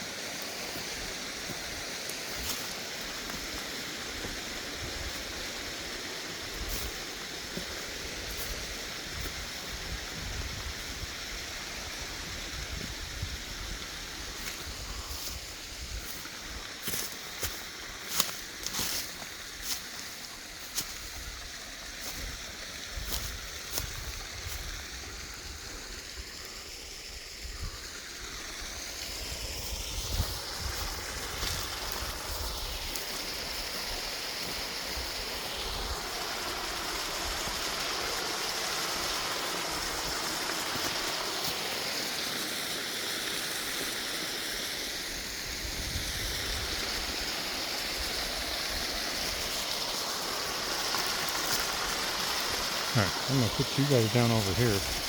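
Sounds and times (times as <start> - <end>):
falling splashing water: 28.0 - 44.1, 46.2 - 55.0.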